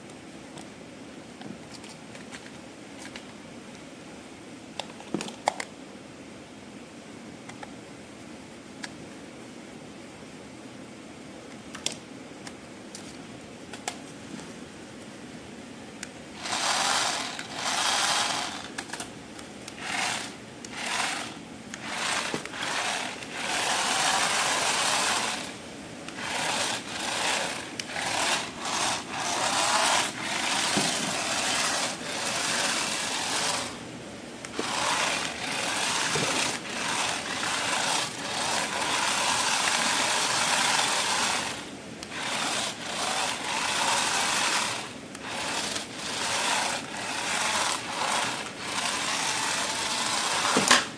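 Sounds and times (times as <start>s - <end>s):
small electric motor whirring: 16.4s - 19.1s, 19.7s - 33.8s, 34.4s - 50.9s.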